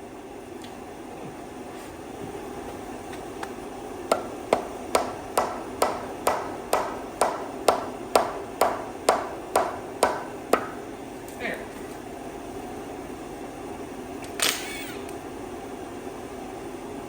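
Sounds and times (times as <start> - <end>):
hammer striking metal: 4.1 - 10.9.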